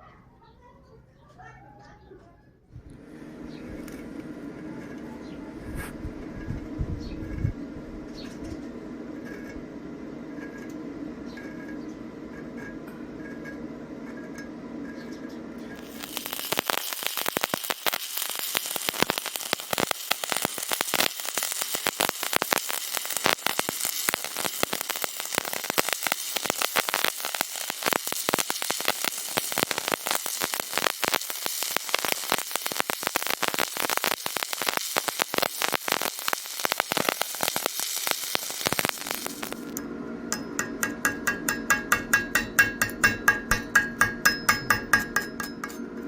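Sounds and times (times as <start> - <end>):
welding arc crackling: 15.8 - 39.8.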